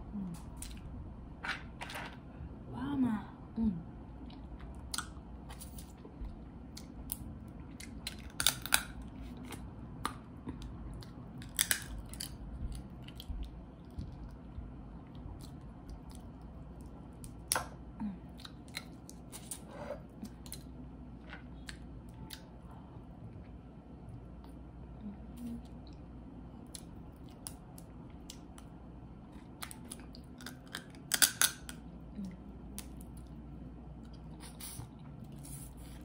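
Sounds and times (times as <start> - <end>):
crawfish shells cracking: 29.6 - 31.8.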